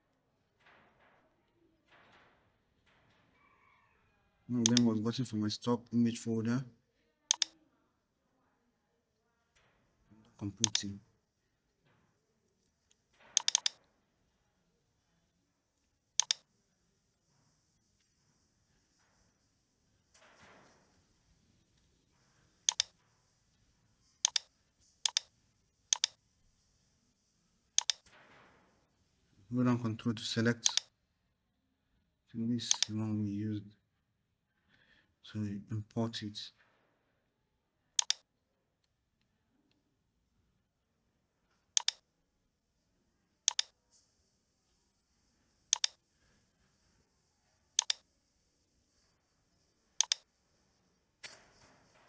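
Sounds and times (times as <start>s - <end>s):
computer mouse double-clicking: 4.6s - 4.9s, 7.3s - 7.6s, 10.6s - 11.0s, 13.4s - 13.8s, 16.2s - 16.5s, 22.6s - 23.4s, 24.0s - 26.9s, 27.7s - 28.1s, 30.6s - 30.9s, 32.7s - 32.9s, 38.0s - 38.2s, 41.8s - 42.0s, 43.5s - 43.8s, 45.6s - 50.3s
faint hiss: 12.1s - 30.9s, 42.6s - 52.0s.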